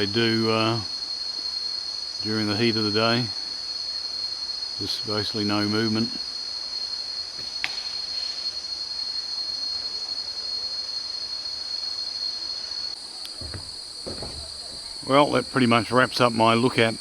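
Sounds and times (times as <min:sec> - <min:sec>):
higher insect drone layer: 0:00.0 - 0:17.0
insects droning: 0:00.0 - 0:17.0.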